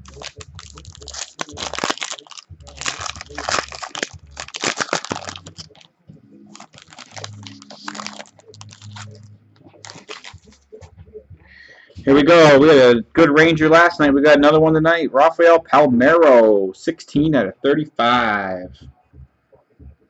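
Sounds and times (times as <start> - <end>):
foil wrapper tearing and crinkling: 0.0 - 5.9, 6.5 - 10.6.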